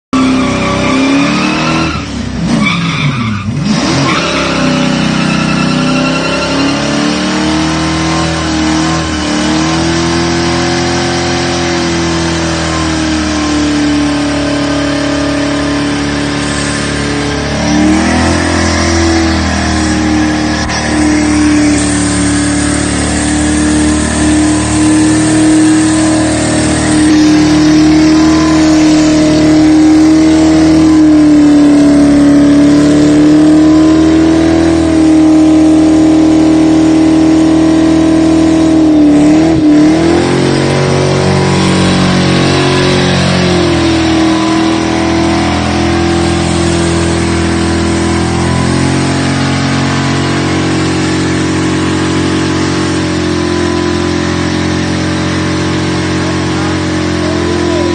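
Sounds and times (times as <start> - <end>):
engine at high revs: 0.1 - 57.9
tyres squealing: 0.2 - 9.4.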